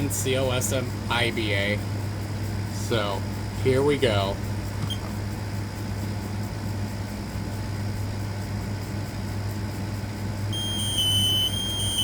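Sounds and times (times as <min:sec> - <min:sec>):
steady low hum: 0:00.0 - 0:12.0
high-pitched smoke alarm tone: 0:10.5 - 0:12.0.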